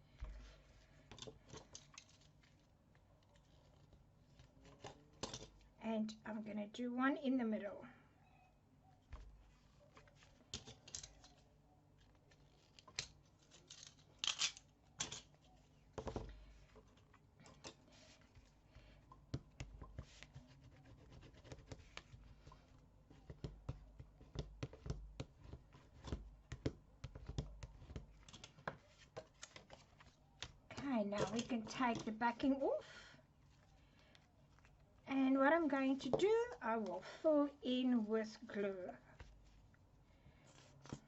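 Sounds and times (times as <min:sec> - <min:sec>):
tape and paper rustling: 0:09.2 - 0:18.6.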